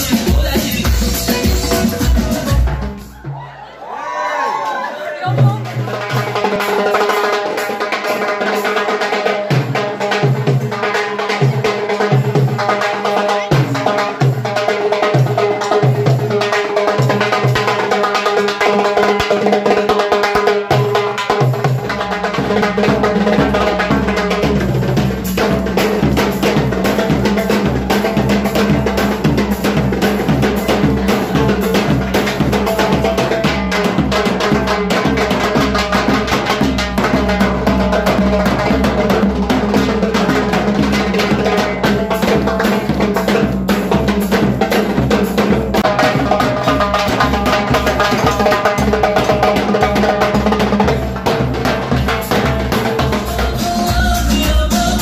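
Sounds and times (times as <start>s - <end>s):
band playing loud music: 0.0s - 3.4s, 5.2s - 55.0s
fast drum beat: 0.0s - 3.6s, 5.2s - 55.0s
deep bass: 53.3s - 55.0s.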